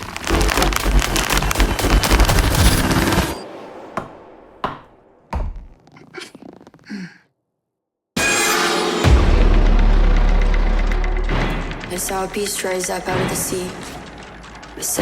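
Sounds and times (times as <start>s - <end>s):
rapid sharp cracks and impacts: 0.0s - 3.3s.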